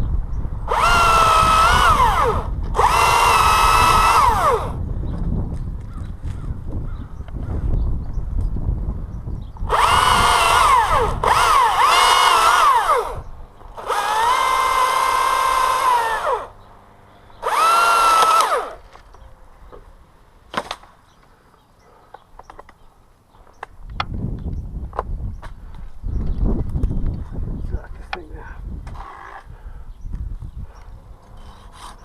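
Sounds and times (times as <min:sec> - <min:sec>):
chainsaw revving: 0:00.7 - 0:04.8, 0:09.7 - 0:16.6, 0:17.4 - 0:19.0, 0:28.9 - 0:29.5.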